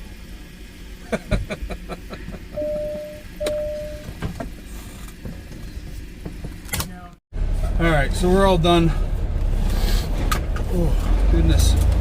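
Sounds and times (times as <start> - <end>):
steady beeps: 2.6 - 4.1.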